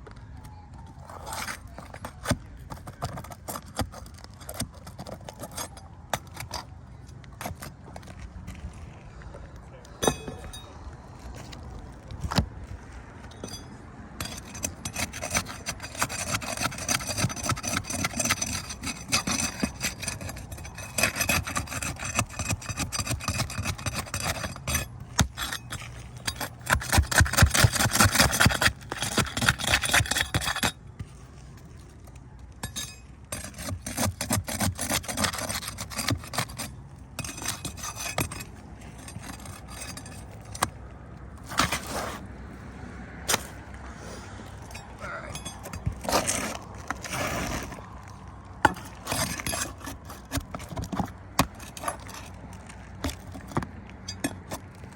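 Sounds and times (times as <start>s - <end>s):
shingles being scraped off roof: 1.0s - 6.8s, 14.2s - 31.4s, 33.3s - 40.8s, 41.4s - 42.3s, 45.0s - 54.8s.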